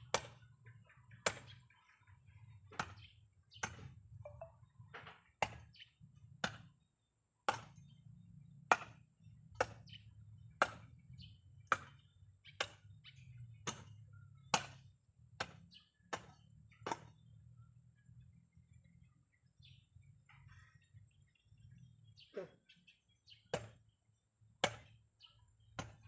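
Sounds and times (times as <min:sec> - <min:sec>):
hand tool chopping strikes: 0:01.2 - 0:01.6, 0:02.7 - 0:03.9, 0:07.4 - 0:07.8, 0:08.7 - 0:09.9, 0:10.6 - 0:11.0, 0:11.6 - 0:12.9, 0:13.6 - 0:14.8, 0:15.4 - 0:17.1, 0:24.6 - 0:24.9, 0:25.8 - 0:26.0.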